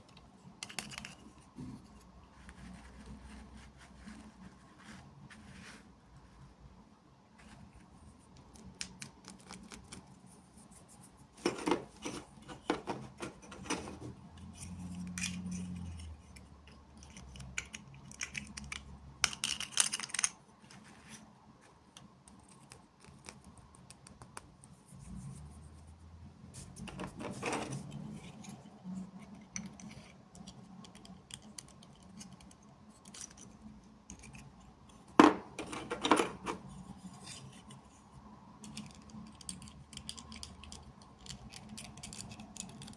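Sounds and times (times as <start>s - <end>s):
plastic toy pieces clicking: 17.0s - 20.4s, 29.5s - 34.4s, 38.6s - 42.9s.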